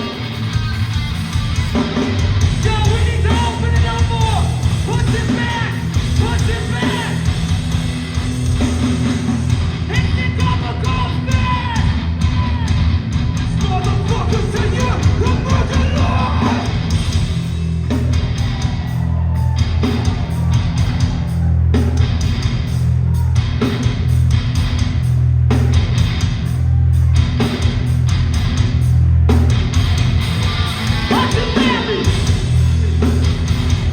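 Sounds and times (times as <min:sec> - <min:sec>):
live hardcore band playing: 0:00.0 - 0:33.9
shouted vocals: 0:02.6 - 0:07.3, 0:09.9 - 0:16.9, 0:18.3 - 0:23.7, 0:30.5 - 0:32.4.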